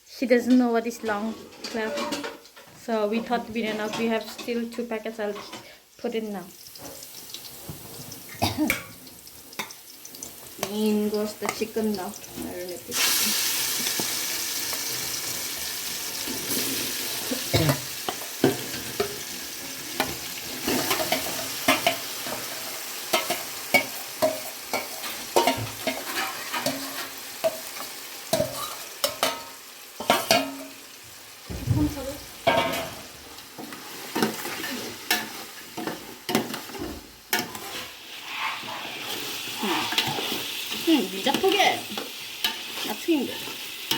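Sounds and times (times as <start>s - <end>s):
chicken sizzling in hot oil: 4.7s - 43.9s
utensil scraping a pan: 20.0s - 30.7s, 32.4s - 43.6s.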